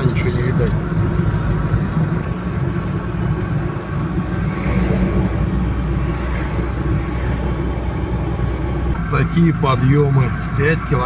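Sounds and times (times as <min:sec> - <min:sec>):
vehicle engine drone from cabin: 0:00.0 - 0:11.0.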